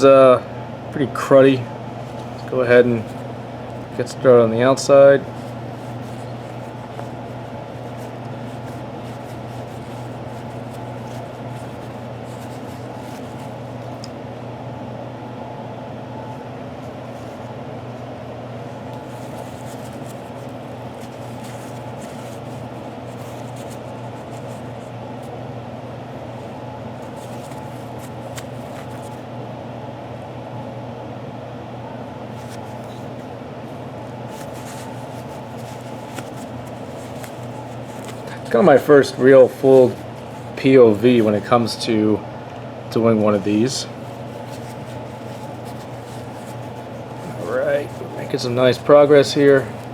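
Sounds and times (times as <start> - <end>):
low electric hum: 0.0 - 49.9
faint scratching: 3.8 - 14.0, 19.0 - 24.9, 27.0 - 29.2, 32.4 - 41.7, 43.2 - 49.9.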